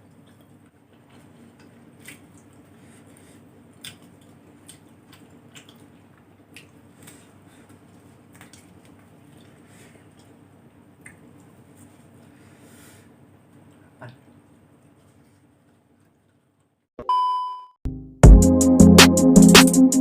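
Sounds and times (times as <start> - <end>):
wet mouth chewing sounds: 0.0 - 12.4.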